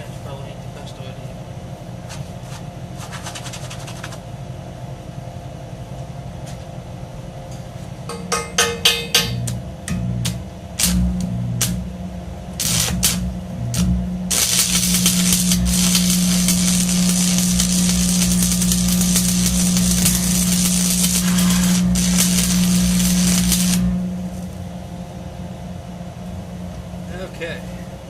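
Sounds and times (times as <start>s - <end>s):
low electrical hum: 0.0s - 28.0s
welding arc crackling and sputtering: 9.2s - 24.6s.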